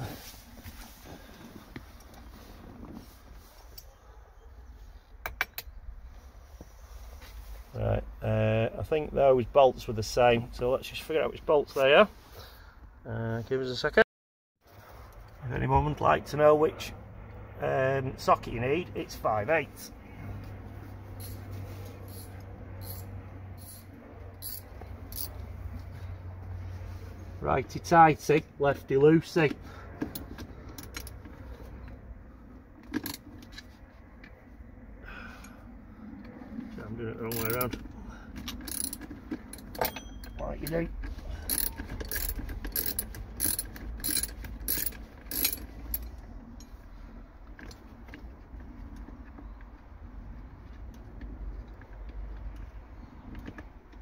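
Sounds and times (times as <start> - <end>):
socket wrench scraping: 21.2 - 25.4, 30.0 - 31.3, 37.3 - 37.8, 38.4 - 46.1.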